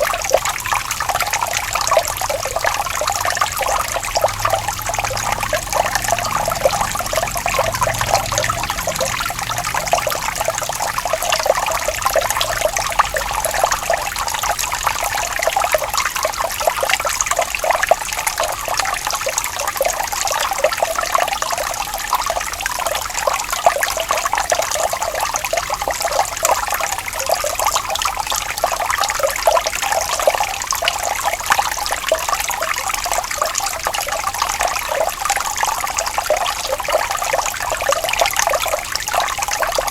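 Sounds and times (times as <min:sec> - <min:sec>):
running water trickling and splashing: 0:00.0 - 0:39.9.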